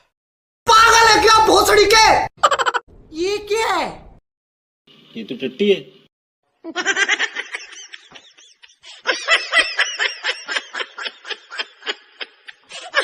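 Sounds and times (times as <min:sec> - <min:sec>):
high-pitched laughter: 0:02.4 - 0:02.8, 0:06.6 - 0:13.0.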